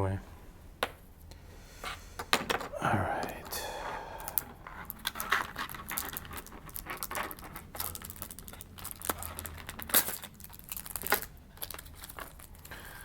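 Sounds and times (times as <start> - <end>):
plastic packaging crinkling: 4.2 - 13.0.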